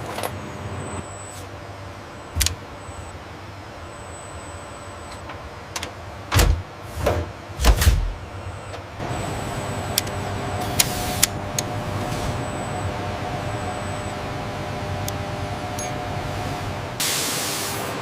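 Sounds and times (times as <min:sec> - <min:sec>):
steady motorised hum: 0:00.0 - 0:18.0
heavy machine thuds: 0:06.3 - 0:08.2.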